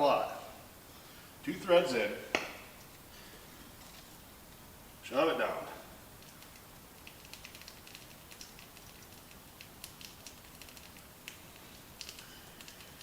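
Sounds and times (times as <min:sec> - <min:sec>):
light ticks and clicks: 0:06.2 - 0:13.0.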